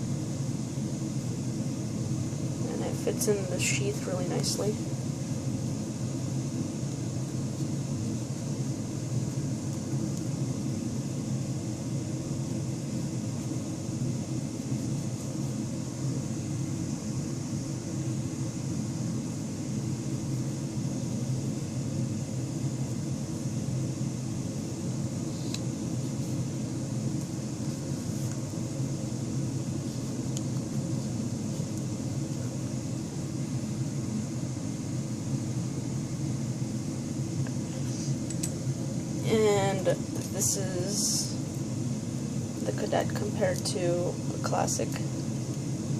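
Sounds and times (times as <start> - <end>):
low background hum: 0.0 - 45.9.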